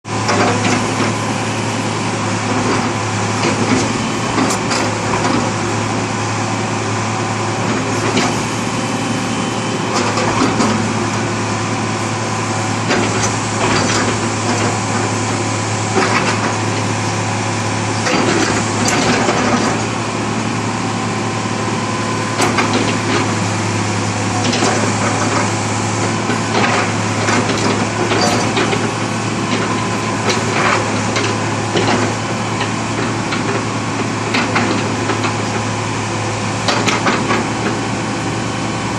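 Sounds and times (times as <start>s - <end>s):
excavator diesel engine running: 0.1s - 38.9s
knocks and clanks: 12.8s - 15.1s, 26.1s - 35.7s.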